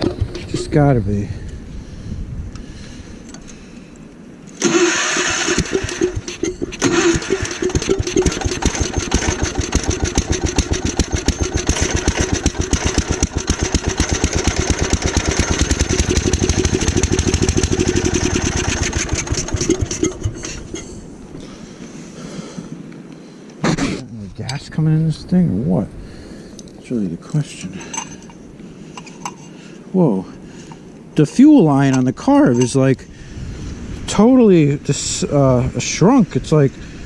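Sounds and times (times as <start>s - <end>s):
snowblower engine running: 4.6s - 20.9s.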